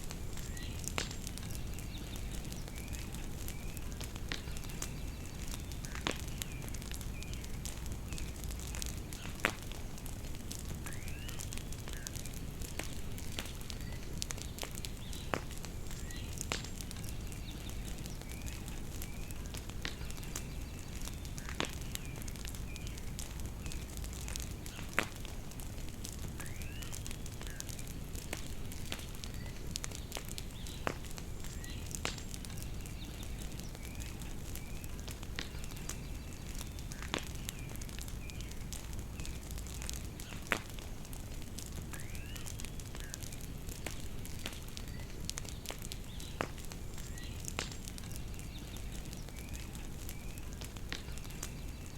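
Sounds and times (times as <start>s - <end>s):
bonfire crackling: 0.0s - 51.9s
birds chirping: 0.3s - 9.7s, 10.8s - 25.3s, 26.4s - 41.2s, 41.8s - 51.9s.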